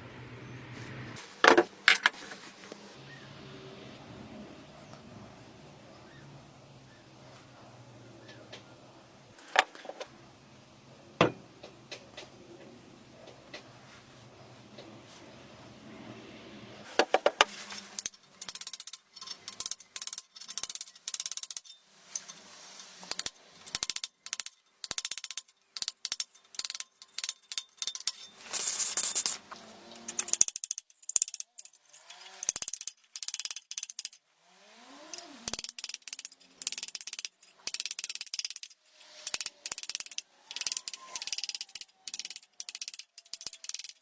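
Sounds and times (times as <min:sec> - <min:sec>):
metallic clicking and ratcheting: 0:18.0 - 0:28.4, 0:29.0 - 0:34.2, 0:35.1 - 0:44.0.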